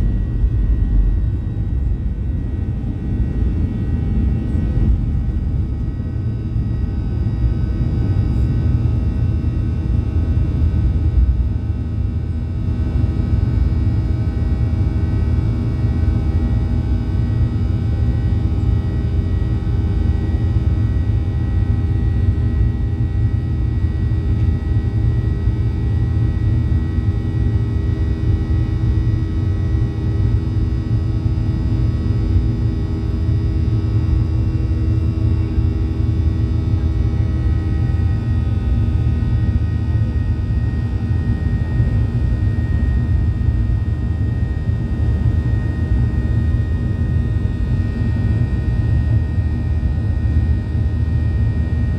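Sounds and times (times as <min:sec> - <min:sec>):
faint whining tones: 0:00.0 - 0:14.0
jet engine cabin drone: 0:00.0 - 0:51.9.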